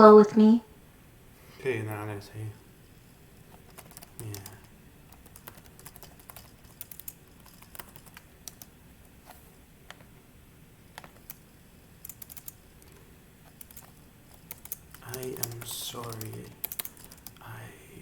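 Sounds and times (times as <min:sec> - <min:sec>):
computer keyboard typing: 0:03.5 - 0:08.7, 0:11.0 - 0:11.4, 0:12.0 - 0:17.5.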